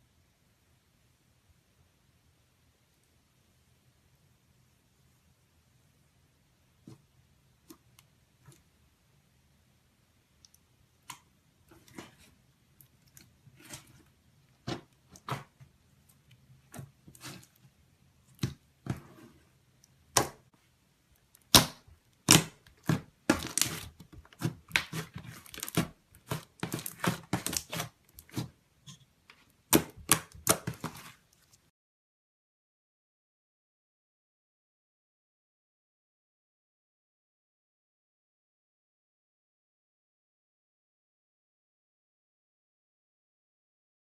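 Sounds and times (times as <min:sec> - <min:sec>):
slime squishing and popping: 0:21.4 - 0:28.5, 0:29.7 - 0:31.2.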